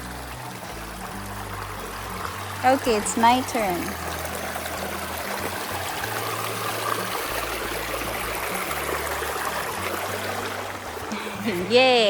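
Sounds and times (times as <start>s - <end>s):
water running over rocks: 0.0s - 12.0s.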